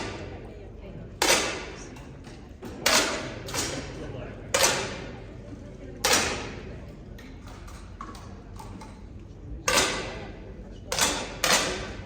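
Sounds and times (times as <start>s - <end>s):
air rifle shots: 1.2s - 1.9s, 11.0s - 12.0s.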